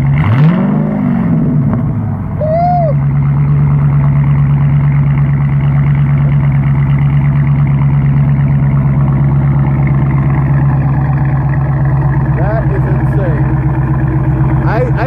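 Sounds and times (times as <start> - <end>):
loud car engine idling: 0.0 - 15.0
man whooping: 2.4 - 3.0.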